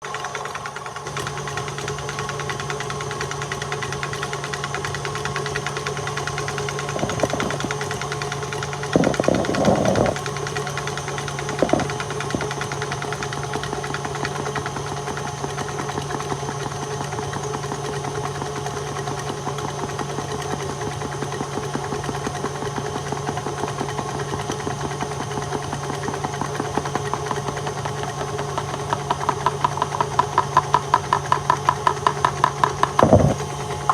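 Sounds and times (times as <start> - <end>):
electric mixer motor humming: 0.1 - 33.9.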